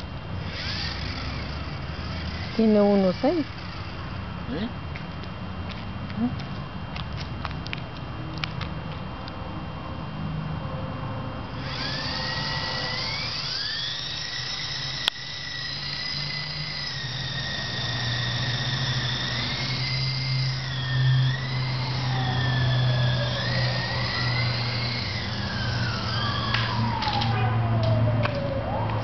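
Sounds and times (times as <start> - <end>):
helicopter rotors whining: 0.0 - 4.8, 11.5 - 29.0
gliding tone: 11.6 - 29.0.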